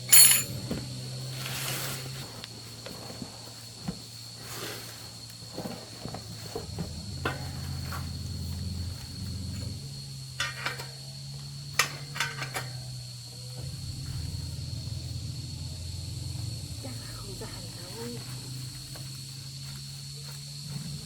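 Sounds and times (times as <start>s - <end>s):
metal hand tools clinking: 0.0s - 0.8s.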